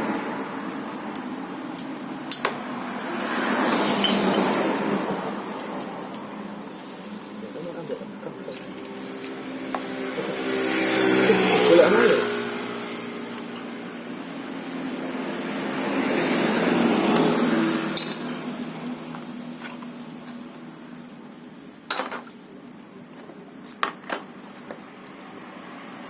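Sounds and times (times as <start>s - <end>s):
metal tools clinking on workbench: 8.3s - 9.5s, 17.9s - 18.9s, 21.9s - 22.3s.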